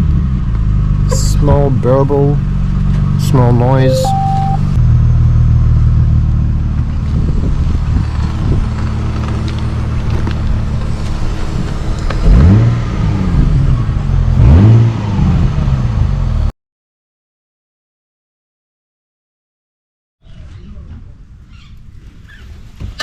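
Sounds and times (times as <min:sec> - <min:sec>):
car engine idling and revving: 0:00.0 - 0:01.1, 0:04.9 - 0:16.5.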